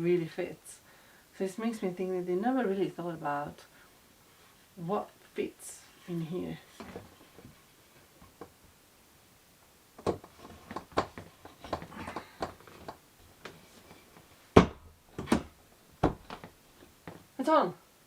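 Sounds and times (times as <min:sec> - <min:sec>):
furniture parts clicking and clattering: 0:10.0 - 0:17.3.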